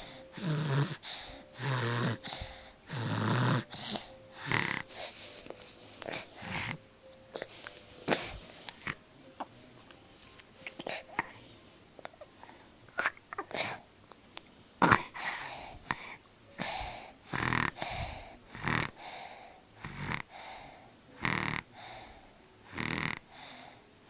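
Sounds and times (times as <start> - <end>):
person snoring: 0.0 - 5.3, 6.0 - 6.8, 16.6 - 19.2, 19.8 - 22.1, 22.7 - 23.8.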